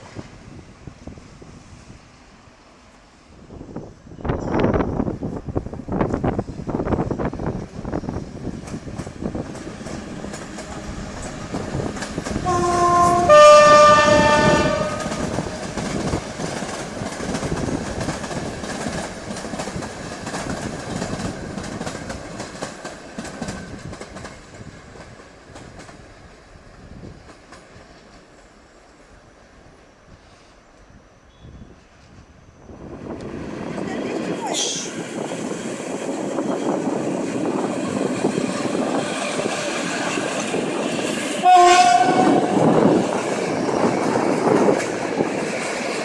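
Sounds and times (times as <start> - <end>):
train wheels clacking over rail joints: 7.0 - 26.4, 35.2 - 46.0
train horn: 12.2 - 15.8, 41.2 - 43.0.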